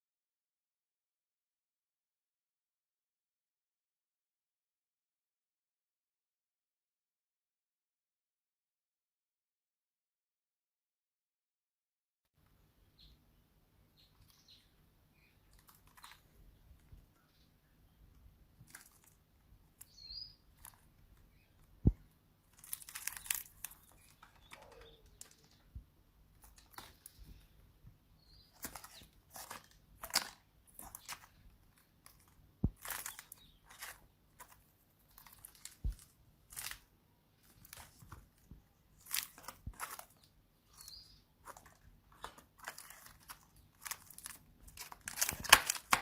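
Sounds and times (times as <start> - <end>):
paper rustling and crinkling: 21.8 - 25.7, 28.5 - 46.0.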